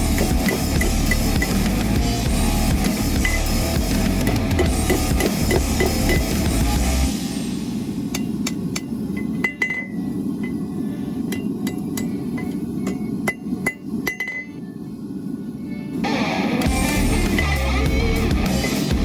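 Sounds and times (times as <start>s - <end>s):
steady low noise: 0.0s - 19.0s
hammer striking metal on anvil: 0.1s - 1.8s, 3.2s - 3.6s, 4.2s - 6.4s, 8.1s - 10.7s, 11.3s - 14.6s, 17.1s - 17.7s.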